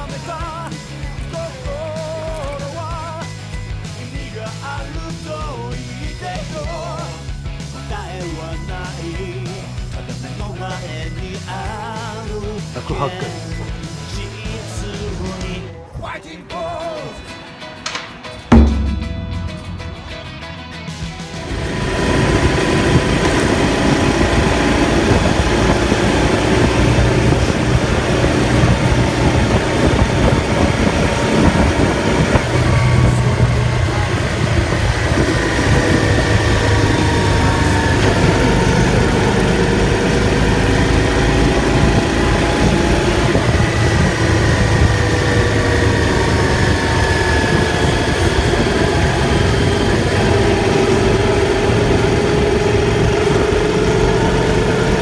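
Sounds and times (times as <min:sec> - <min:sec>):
motorcycle engine running: 0:18.5 - 0:55.0
road and wind noise: 0:21.3 - 0:55.0.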